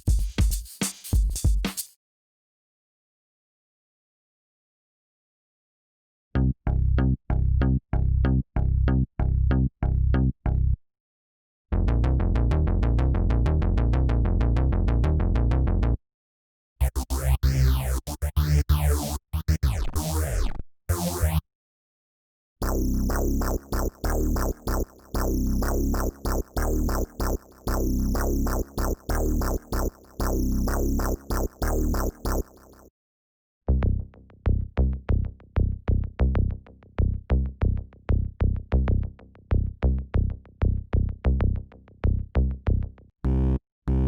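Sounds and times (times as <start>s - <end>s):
chopped drum-machine groove: 0.0s - 1.9s, 22.6s - 32.8s
repeating synth pattern: 22.6s - 32.8s
stuttering sweeping electronic sounds: 22.6s - 32.8s.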